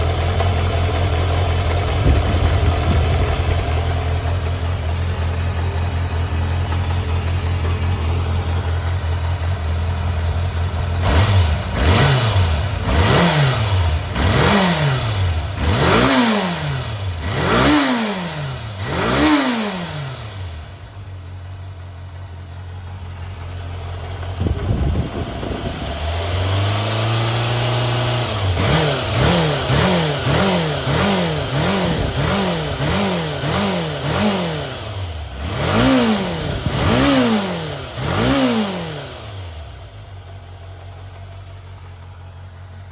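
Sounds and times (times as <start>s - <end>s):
motorcycle engine revving: 0.0s - 42.9s.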